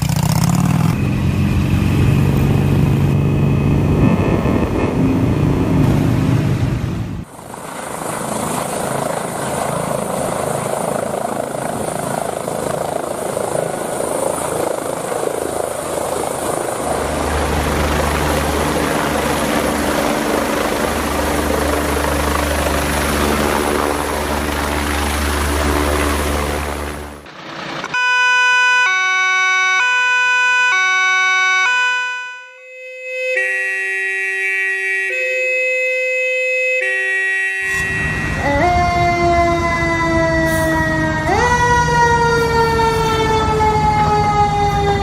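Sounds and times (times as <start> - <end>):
helicopter rotor and engine: 0.0 - 28.0, 36.8 - 45.0
two-tone siren: 0.5 - 6.2, 27.9 - 45.0
high whine: 0.5 - 7.6, 37.6 - 39.8.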